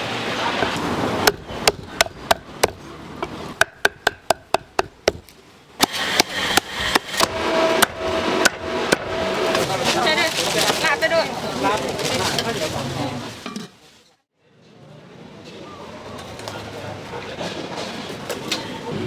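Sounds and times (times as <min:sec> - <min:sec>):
cleaver chopping on wooden block: 0:01.2 - 0:09.1.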